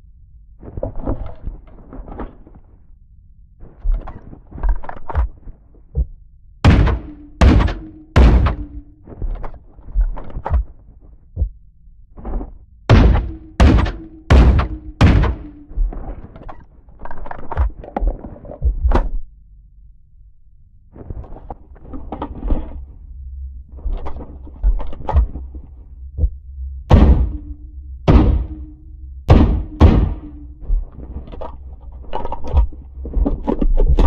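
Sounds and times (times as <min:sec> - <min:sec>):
rifle shots with ringing tail: 0:06.6 - 0:08.6.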